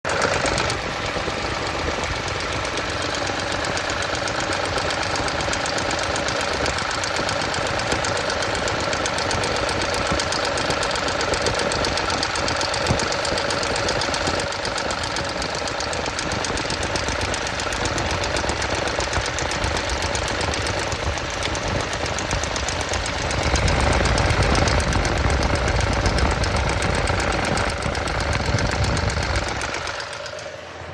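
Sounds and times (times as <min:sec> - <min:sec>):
engine ticking clatter: 0:00.0 - 0:30.9
low engine rumble: 0:07.8 - 0:30.9.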